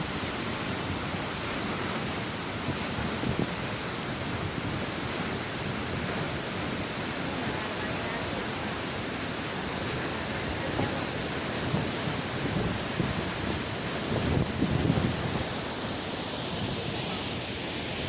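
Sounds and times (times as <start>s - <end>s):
waterfall rushing: 0.0s - 18.0s
wind buffeting microphone: 10.5s - 15.5s.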